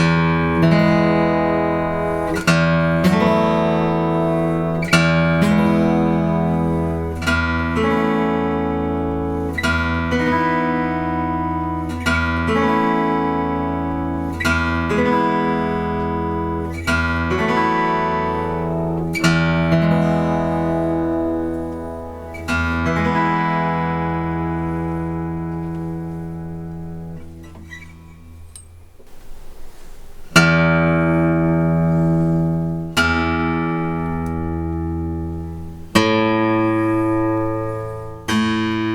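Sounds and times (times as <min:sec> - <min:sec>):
acoustic guitar strummed chords: 0:00.0 - 0:38.9.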